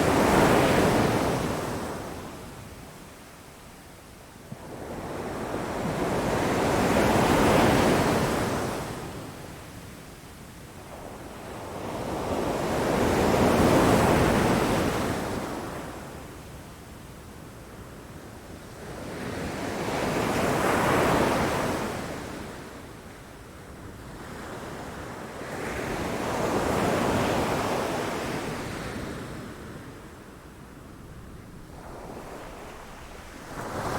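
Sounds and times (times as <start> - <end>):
low wash of water: 31.0 - 33.9
ocean waves breaking: 31.0 - 33.9.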